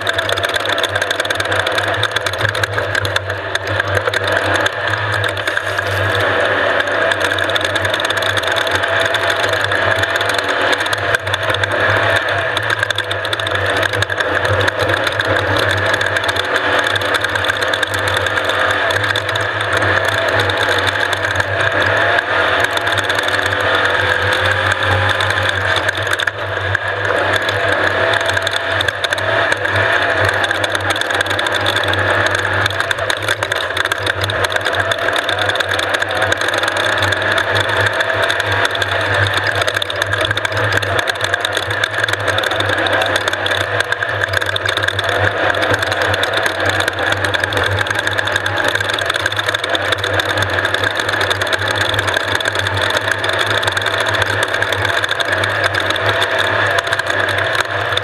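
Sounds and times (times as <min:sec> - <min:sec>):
constant rattle: 0:00.0 - 0:58.0
race vehicle engine running: 0:00.0 - 0:58.0.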